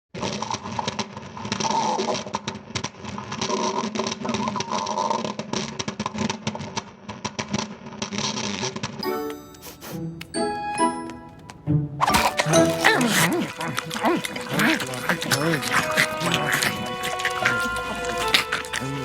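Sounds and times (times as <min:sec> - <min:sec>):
stomach growling: 0:00.2 - 0:08.9, 0:12.0 - 0:19.0
cartoon music with chimes: 0:09.0 - 0:13.5.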